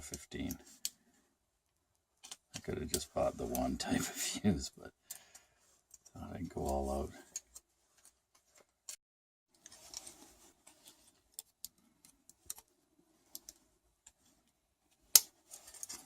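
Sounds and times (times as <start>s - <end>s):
small parts scraping and clicking: 2.2s - 3.7s, 5.1s - 9.0s, 9.6s - 12.7s, 13.3s - 16.0s.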